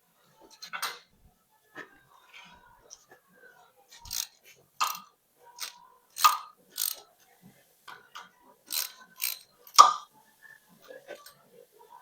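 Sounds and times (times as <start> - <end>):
ratchet wrench clicking: 4.1 - 5.0, 5.6 - 7.0, 8.7 - 10.0.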